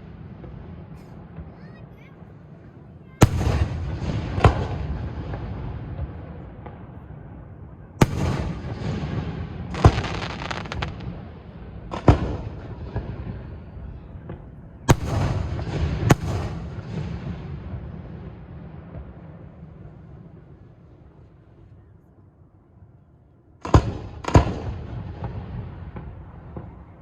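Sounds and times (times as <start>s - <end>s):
fireworks crackling: 0.0s - 6.8s, 8.0s - 17.6s
fireworks bangs with echo: 0.0s - 21.4s, 23.6s - 27.0s.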